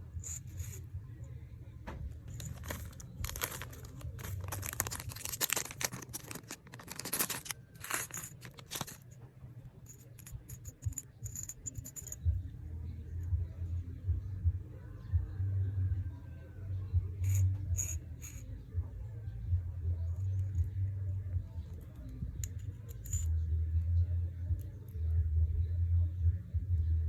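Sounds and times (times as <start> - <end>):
low steady hum: 0.0 - 27.0
plastic packaging crinkling: 2.3 - 9.0.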